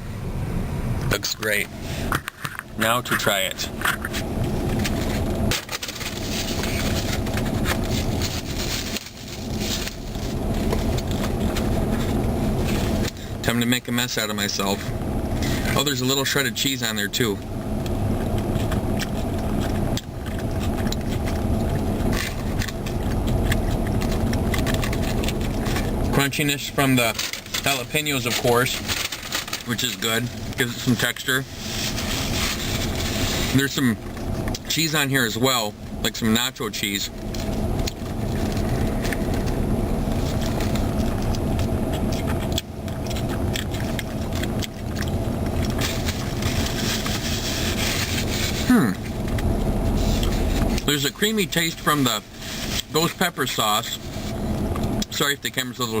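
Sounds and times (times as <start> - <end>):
car engine idling: 0.0 - 56.0
food container handling: 3.8 - 13.4, 18.2 - 34.6, 37.1 - 55.0
person chewing crunchy fries: 3.8 - 13.4, 17.6 - 34.7, 37.1 - 55.1.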